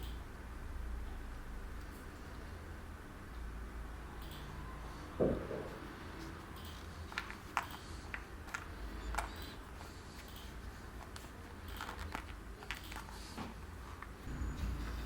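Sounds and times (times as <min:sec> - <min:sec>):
low steady hum: 0:13.7 - 0:15.0.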